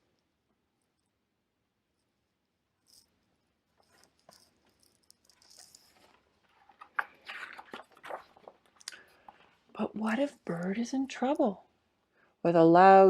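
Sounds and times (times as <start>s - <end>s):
book pages turning: 5.4s - 10.3s.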